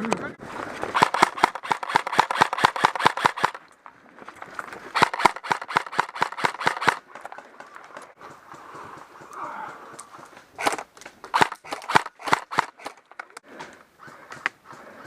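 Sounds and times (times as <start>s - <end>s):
airsoft gun firing bursts: 0.9s - 3.6s, 5.0s - 7.0s, 10.6s - 13.1s.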